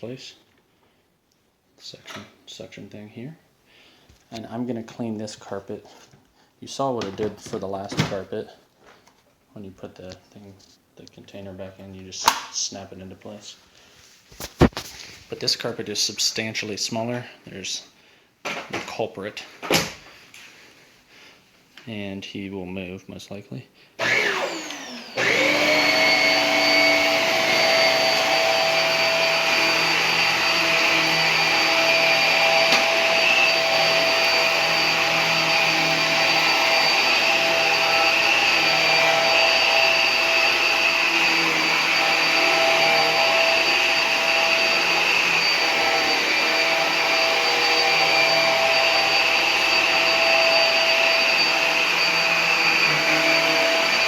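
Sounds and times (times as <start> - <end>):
vacuum cleaner motor whine: 24.0 - 54.0.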